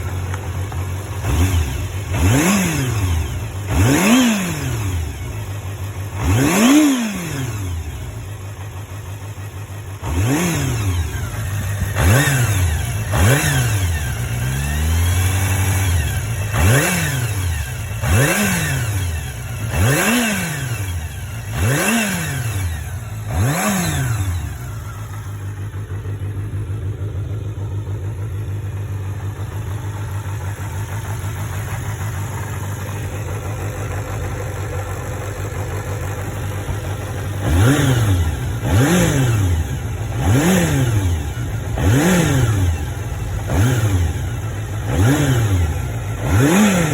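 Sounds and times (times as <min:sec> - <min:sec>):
motorcycle engine idling: 0:00.0 - 0:46.9
motorcycle engine revving: 0:00.0 - 0:46.9.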